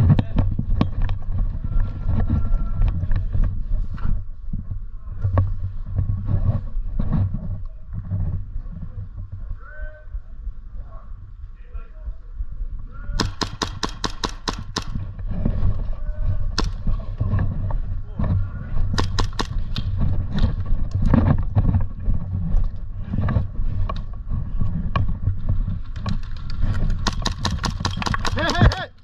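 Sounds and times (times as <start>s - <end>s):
airsoft gun shots: 13.2s - 15.1s, 16.6s - 17.1s, 19.0s - 20.0s, 27.0s - 28.8s.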